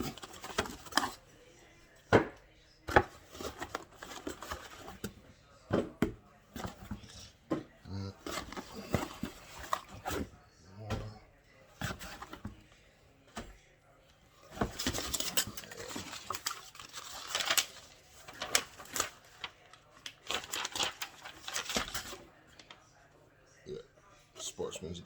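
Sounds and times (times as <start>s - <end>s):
rustling: 14.4s - 22.8s
boxes knocking and clattering: 14.5s - 16.4s.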